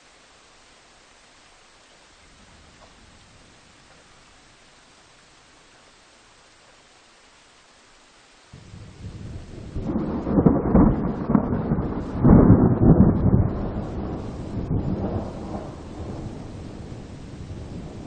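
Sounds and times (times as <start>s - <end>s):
steady rain: 0.0s - 18.0s
thunder rumbling: 8.6s - 18.0s.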